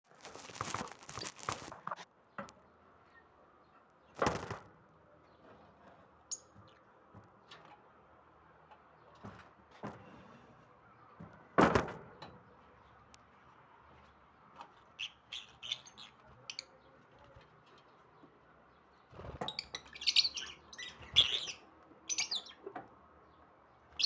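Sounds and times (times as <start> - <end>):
birds knocking about in cage: 4.1 - 4.8, 5.6 - 10.1.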